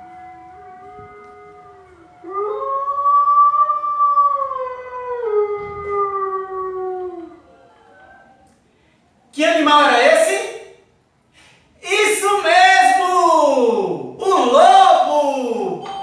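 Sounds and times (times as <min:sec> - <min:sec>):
animals howling: 0:00.0 - 0:08.4.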